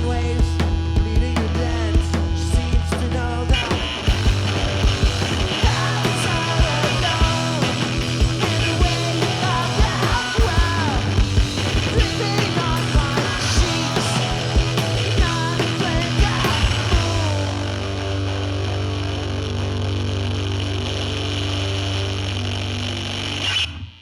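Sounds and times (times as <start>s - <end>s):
bass notes: 0.0s - 23.8s
fast drum beat: 0.4s - 17.4s
guitar notes: 3.8s - 23.8s
person singing: 5.6s - 11.2s, 12.0s - 17.6s.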